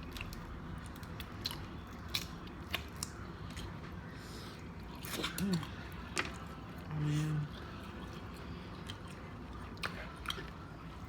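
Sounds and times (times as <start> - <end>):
chewing: 0.0 - 11.0.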